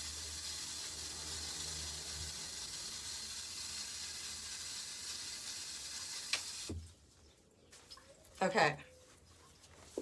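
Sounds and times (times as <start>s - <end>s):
lawn sprinkler hissing: 0.0s - 6.8s.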